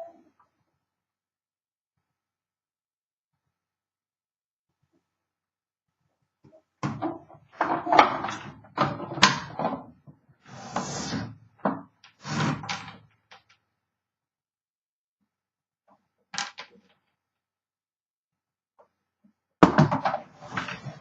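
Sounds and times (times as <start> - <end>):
short scraping slide: 10.5 - 11.3
knocks and clunks of wooden case: 19.6 - 21.0.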